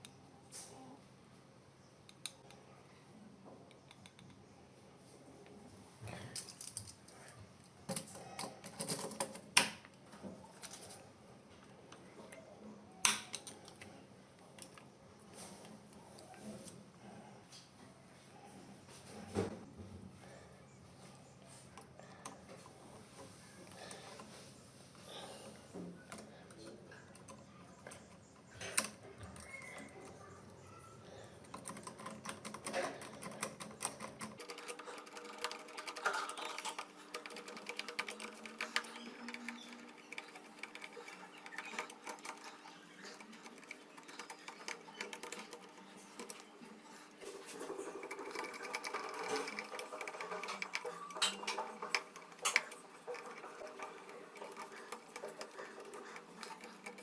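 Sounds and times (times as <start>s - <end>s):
rapid clicking and rattling: 31.5s - 57.0s.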